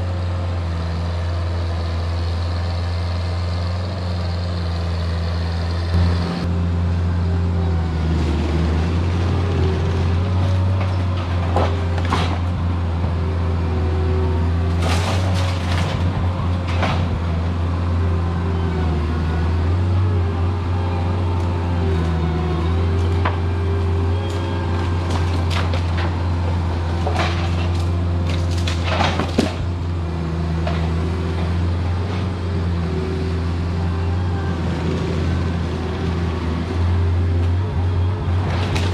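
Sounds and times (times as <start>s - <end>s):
skid steer engine running: 0.0s - 38.9s
timber cracking and knocking: 24.8s - 29.8s.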